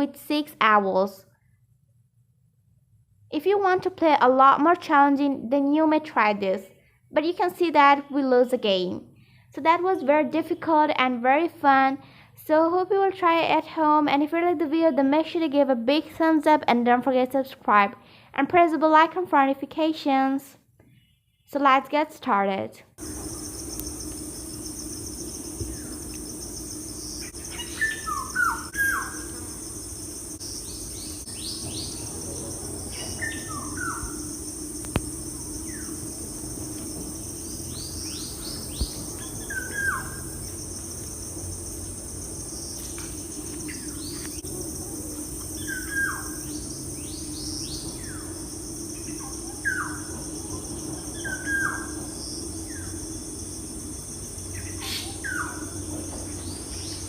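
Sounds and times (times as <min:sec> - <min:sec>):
birds chirping: 0:23.0 - 0:34.7, 0:37.1 - 0:44.5, 0:45.2 - 0:53.1
high-pitched insect drone: 0:23.0 - 0:57.0.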